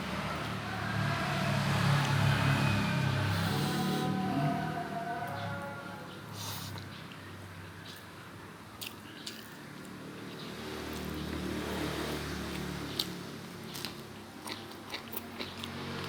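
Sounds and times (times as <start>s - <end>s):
person chewing food: 8.8s - 16.0s.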